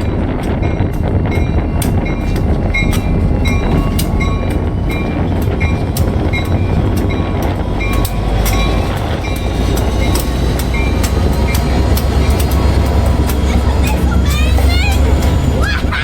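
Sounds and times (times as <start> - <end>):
train cars rumbling: 0.0 - 16.0
wheels clicking over rail joints: 0.0 - 16.0.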